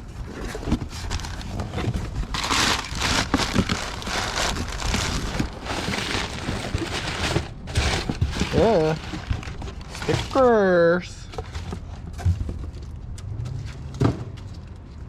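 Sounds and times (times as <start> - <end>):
packaging crinkling and rustling: 0.1 - 12.0.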